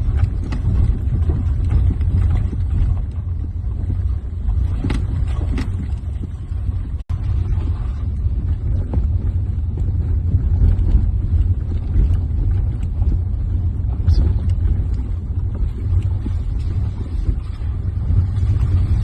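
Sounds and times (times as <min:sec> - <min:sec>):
small knocks and rattles: 0:00.0 - 0:07.0
vehicle rumbling on rough road: 0:00.0 - 0:19.0.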